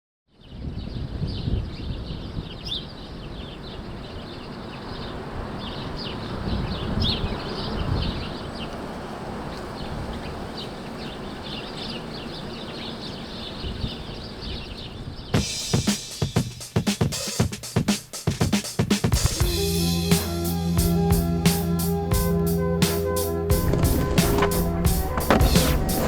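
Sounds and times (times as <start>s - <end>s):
small birds chirping: 0.4s - 17.1s.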